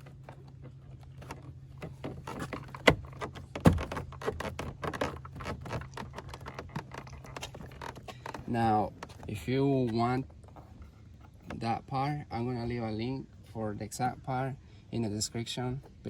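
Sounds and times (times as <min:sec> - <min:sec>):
plastic panel clicks and rattles: 0:00.0 - 0:09.3.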